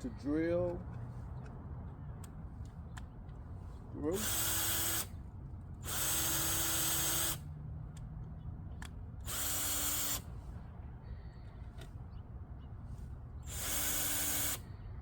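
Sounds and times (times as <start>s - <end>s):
electric drill boring wood: 9.3s - 10.2s, 13.5s - 14.6s.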